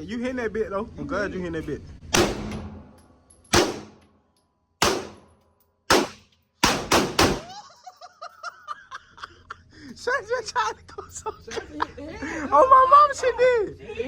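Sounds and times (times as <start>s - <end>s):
gunshots with echo: 2.2s - 2.9s, 3.5s - 4.0s, 4.8s - 7.5s.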